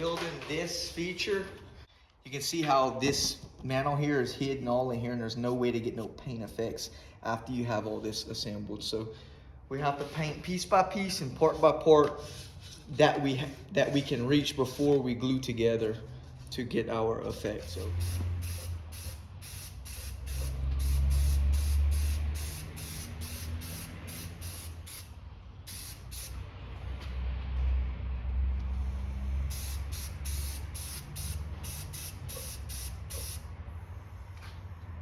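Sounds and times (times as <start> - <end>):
spray hissing in short pulses: 17.7 - 25.1, 25.7 - 26.4, 28.8 - 34.0.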